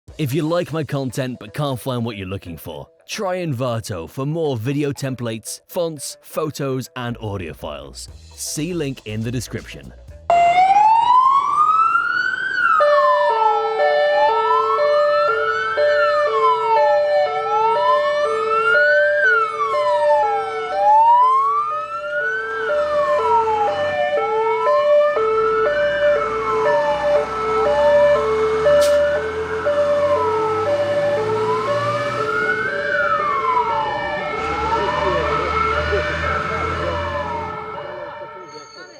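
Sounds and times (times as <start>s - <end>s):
fire truck siren wailing: 10.3s - 38.9s
two-tone siren: 10.3s - 38.9s.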